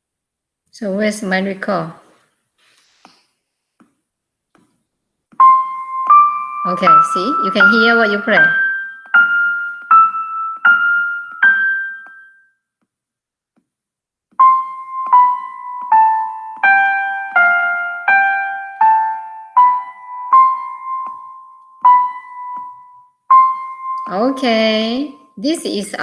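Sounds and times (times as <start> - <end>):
simple piano melody: 5.3 - 12.6, 14.3 - 26.0.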